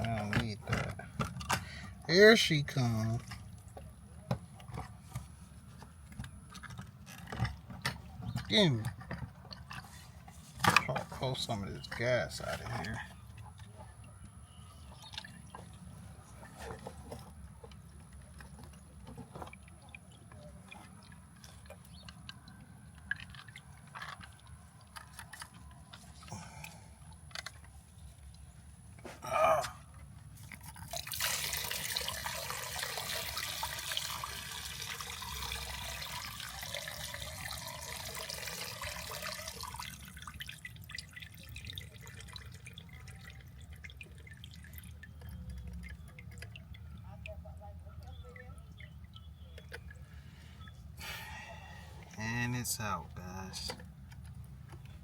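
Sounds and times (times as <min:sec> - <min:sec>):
gasoline dripping and trickling: 0:00.0 - 0:55.0
liquid splashing and pouring: 0:30.3 - 0:47.3.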